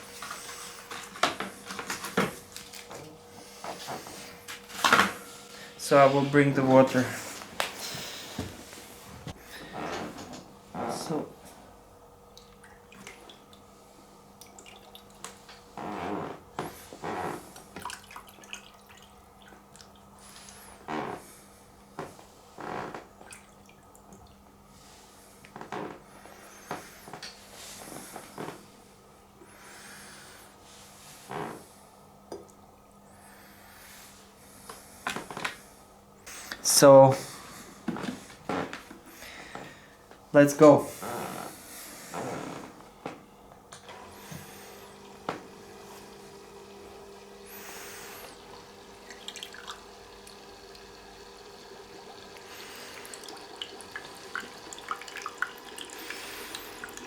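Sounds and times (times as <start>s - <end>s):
water splashing into basin: 12.3s - 13.7s, 14.4s - 15.4s, 17.7s - 20.6s, 49.0s - 50.9s, 52.1s - 57.0s
fountain pump humming: 44.0s - 57.0s.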